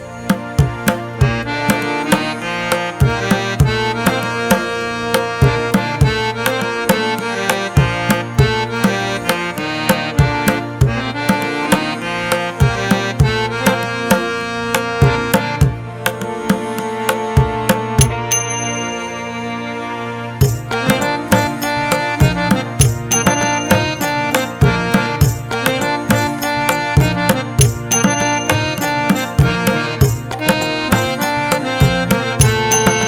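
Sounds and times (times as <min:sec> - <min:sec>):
sustained melodic instruments: 0:00.0 - 0:33.0
hand drums beating quick rhythm: 0:00.2 - 0:18.7, 0:20.4 - 0:33.0.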